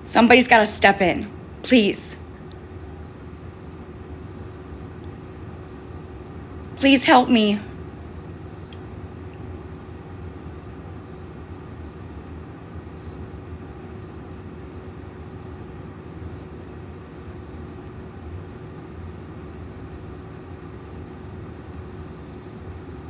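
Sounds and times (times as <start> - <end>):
faint constant hum: 0.0 - 23.0.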